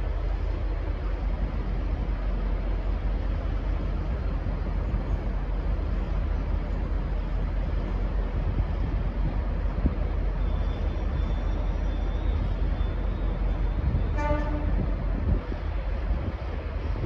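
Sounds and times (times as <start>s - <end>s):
diesel locomotive rumbling: 0.0s - 17.0s
locomotive horn toot: 14.1s - 15.0s.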